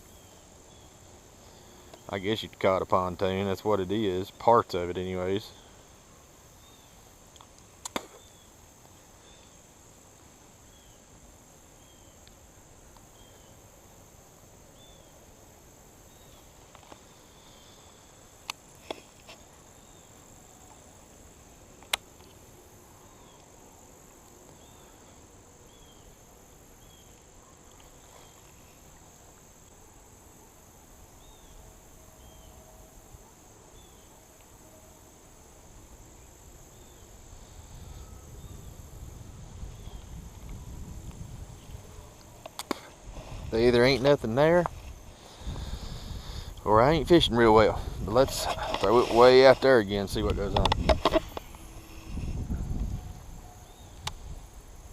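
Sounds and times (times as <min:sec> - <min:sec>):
insects droning: 0:00.0 - 0:54.9
sharp clicks: 0:07.3 - 0:08.2.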